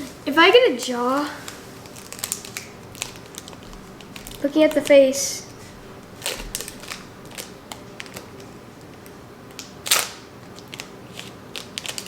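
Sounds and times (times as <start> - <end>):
trading cards being handled: 1.1 - 8.3.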